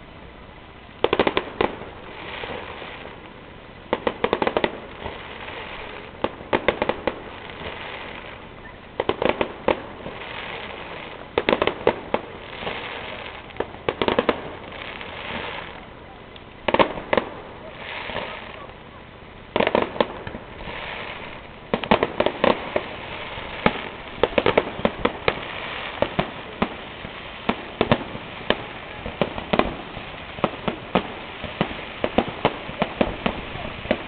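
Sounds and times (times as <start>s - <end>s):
firework crackle: 0.0s - 34.0s
firework shells bursting: 19.5s - 26.8s.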